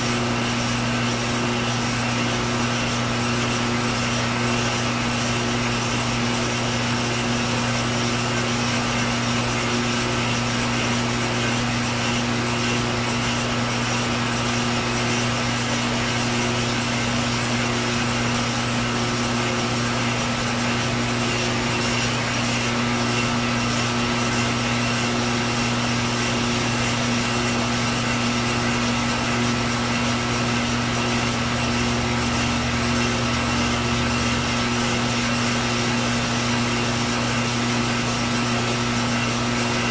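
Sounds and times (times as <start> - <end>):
machine cutting glass tube: 0.0 - 39.9
shop vacuum humming: 0.0 - 39.9.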